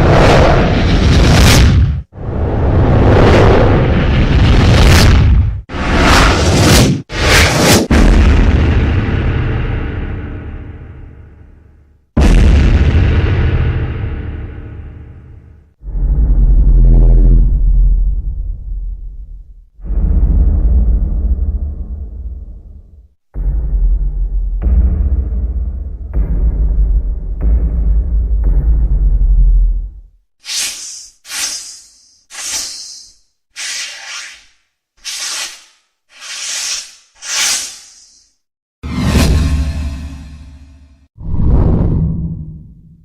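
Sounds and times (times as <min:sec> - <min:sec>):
whoosh transition effects: 0:30.4 - 0:38.4.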